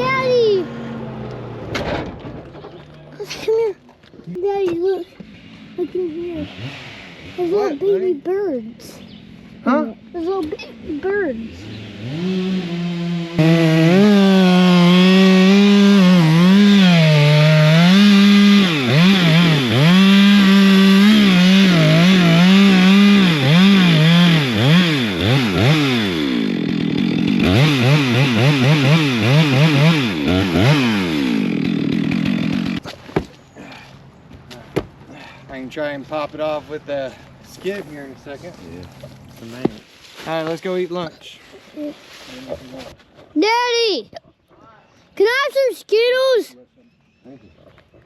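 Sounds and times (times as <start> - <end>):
chainsaw engine revving: 0.0 - 1.9, 5.4 - 8.1, 10.8 - 32.8.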